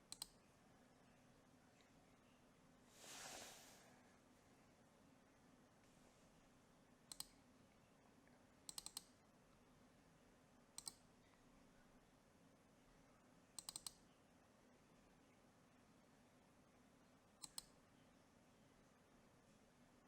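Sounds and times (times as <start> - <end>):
computer mouse clicks: 0.0 - 0.4, 7.1 - 7.4, 8.7 - 9.2, 10.8 - 11.1, 13.6 - 14.1, 17.4 - 17.8.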